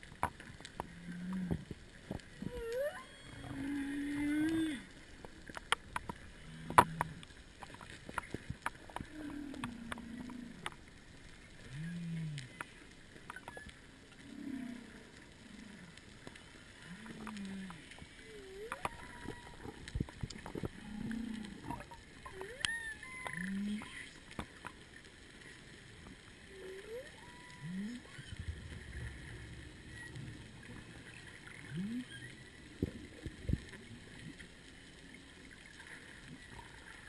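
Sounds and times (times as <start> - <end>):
sharp clicks and crackles: 0.0 - 37.0
whale song moans: 0.9 - 1.7, 2.3 - 4.9, 9.0 - 10.7, 11.6 - 12.7, 13.3 - 16.0, 16.8 - 24.2, 26.4 - 33.2.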